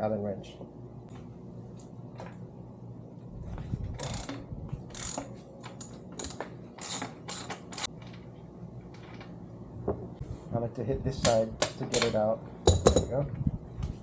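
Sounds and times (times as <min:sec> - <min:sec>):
ratchet wrench clicking: 0:04.0 - 0:07.9.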